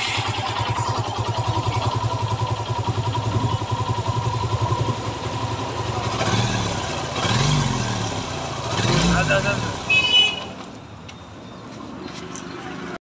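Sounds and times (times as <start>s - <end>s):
motorcycle engine idling and revving: 0.0s - 13.0s.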